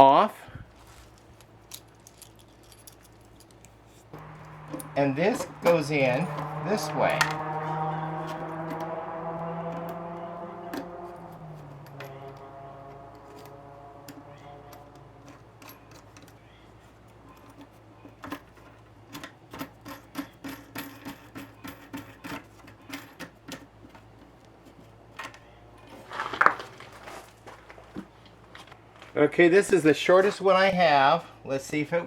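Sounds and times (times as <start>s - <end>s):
metal lock parts clicking: 1.3s - 6.4s, 13.2s - 24.2s.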